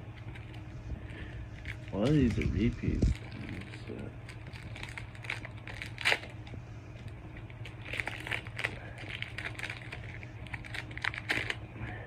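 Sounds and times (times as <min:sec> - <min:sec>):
foil wrapper crinkling: 0:00.1 - 0:11.7.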